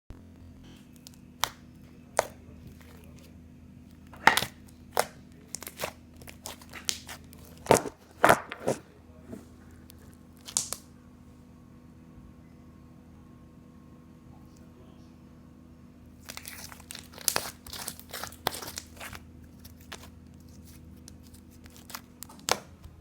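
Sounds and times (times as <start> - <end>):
crunchy slime crackling: 0.8 - 3.3, 3.9 - 8.8, 9.6 - 10.9, 16.2 - 22.8.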